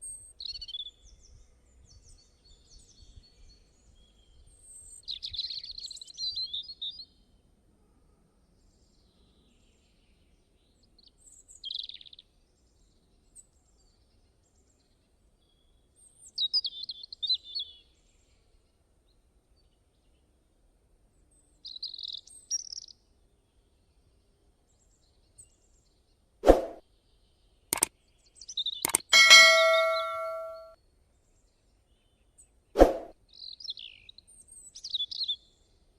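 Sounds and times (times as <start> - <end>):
sharp knock: 26.5 - 26.8, 28.9 - 30.7.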